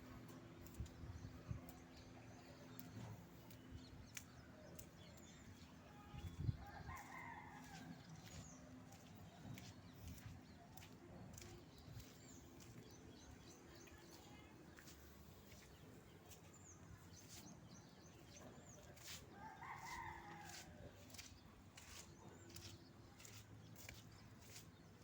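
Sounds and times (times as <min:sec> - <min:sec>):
rooster crowing faintly: 0:06.3 - 0:08.4, 0:19.0 - 0:21.2.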